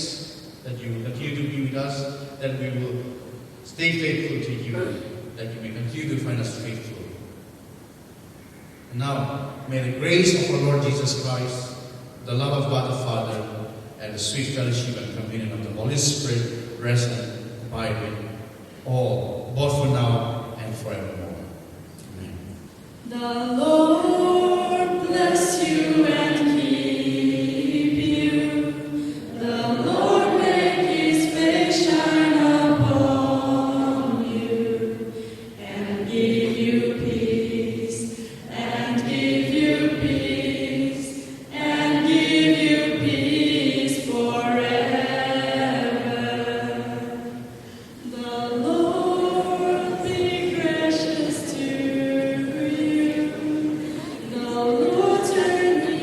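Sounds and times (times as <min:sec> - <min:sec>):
congregation singing: 0:22.8 - 0:56.0.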